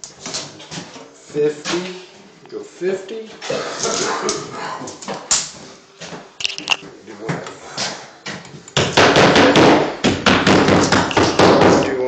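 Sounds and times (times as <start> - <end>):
taps and knocks: 8.8 - 11.9.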